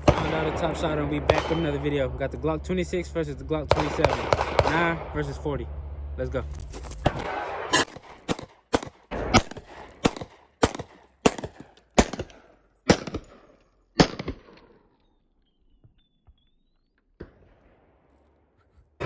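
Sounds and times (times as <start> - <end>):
pistol shots with echo: 0.0 - 2.3, 3.6 - 5.5, 7.1 - 14.8.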